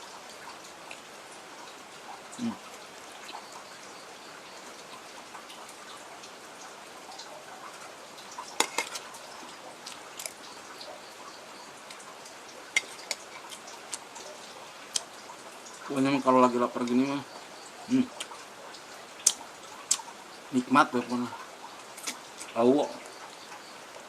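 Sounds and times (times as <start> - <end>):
utensils clinking against bowl: 12.8 - 13.6.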